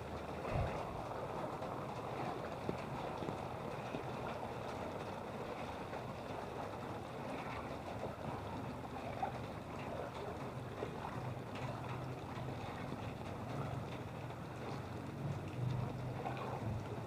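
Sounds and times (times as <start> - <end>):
faint low hum: 0.0 - 3.2
water in flooded street: 0.0 - 17.0.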